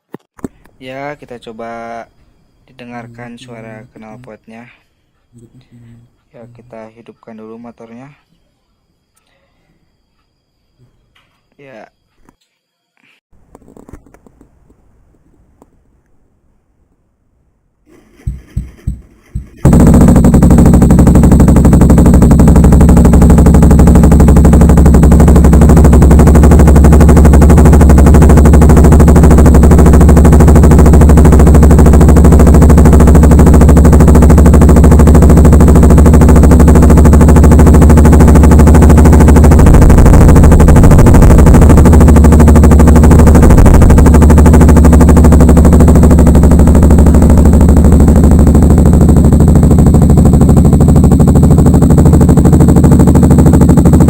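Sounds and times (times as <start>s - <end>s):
motorcycle engine idling: 17.9s - 54.0s.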